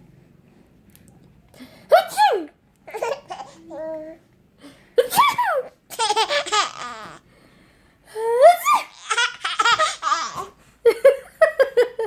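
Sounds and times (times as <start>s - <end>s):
baby laughing: 2.9s - 4.0s, 5.2s - 7.2s, 8.7s - 10.6s.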